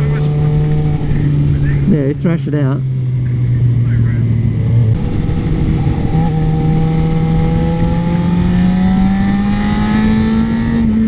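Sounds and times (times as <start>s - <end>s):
motorcycle engine accelerating: 0.0s - 11.0s
wind rush over microphone: 4.4s - 11.0s.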